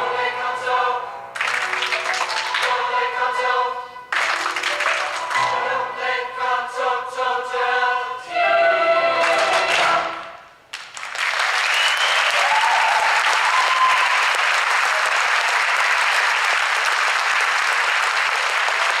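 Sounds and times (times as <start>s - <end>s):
choir singing a chord: 0.0s - 1.4s, 2.5s - 4.2s, 5.3s - 10.5s
audience applause: 1.4s - 2.8s, 4.1s - 5.4s, 9.2s - 19.0s.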